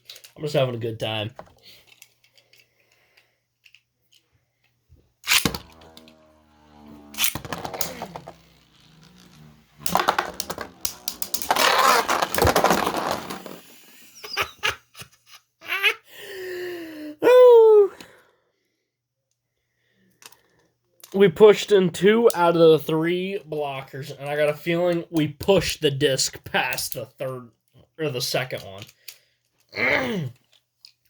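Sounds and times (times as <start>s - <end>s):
spinning tops clashing: 5.3s - 13.6s.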